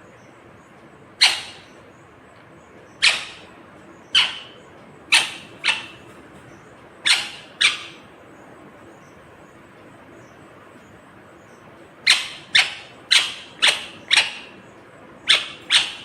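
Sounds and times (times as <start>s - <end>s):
parrot squawking: 1.2s - 1.8s, 3.0s - 3.5s, 4.1s - 6.0s, 7.0s - 8.1s, 12.0s - 14.6s, 15.2s - 16.0s.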